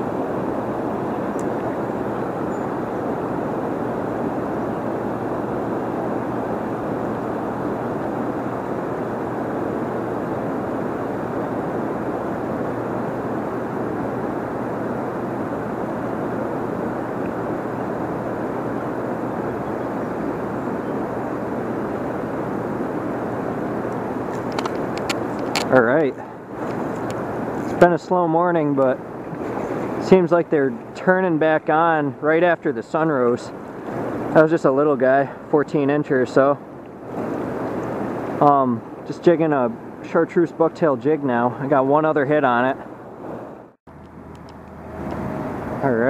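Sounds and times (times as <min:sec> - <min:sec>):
river water rushing: 0:00.0 - 0:27.9, 0:29.0 - 0:31.0, 0:33.5 - 0:34.4.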